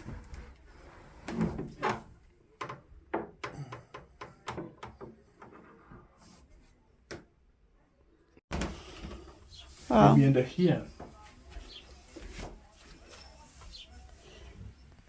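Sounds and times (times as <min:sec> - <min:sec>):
cabinet doors opening and shutting: 0:00.0 - 0:05.7.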